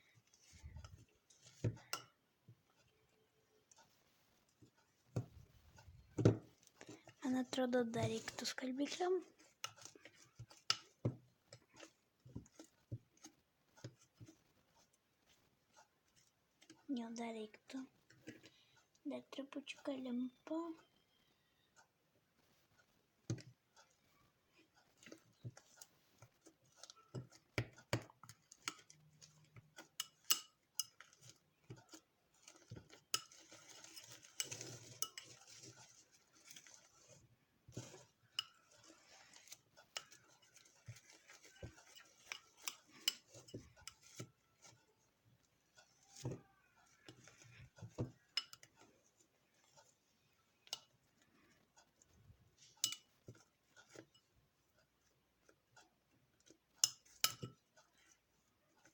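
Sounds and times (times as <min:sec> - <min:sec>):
utensil scraping a bowl: 0:23.9 - 0:54.8.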